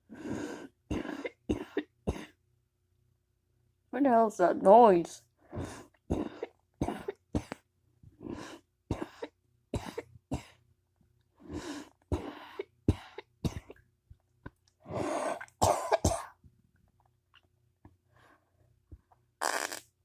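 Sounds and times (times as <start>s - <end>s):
person coughing: 15.6s - 16.4s.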